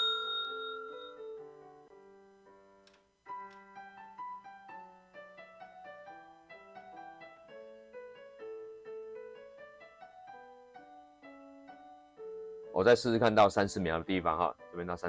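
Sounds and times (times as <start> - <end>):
timer bell ringing: 0.0 - 1.5
soft piano music: 0.0 - 15.0.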